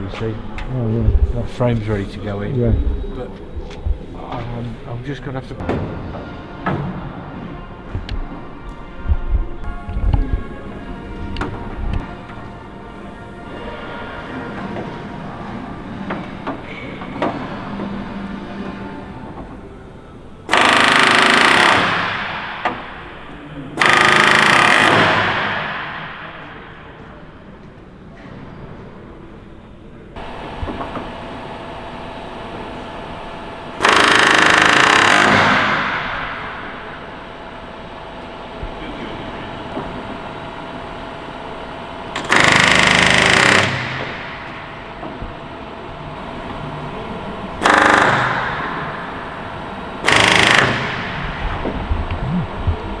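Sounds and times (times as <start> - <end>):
steady background hum: 0.0 - 53.0
pneumatic rivet gun hammering: 20.5 - 26.7, 30.2 - 32.6, 33.6 - 37.4, 42.1 - 45.5, 47.3 - 51.9.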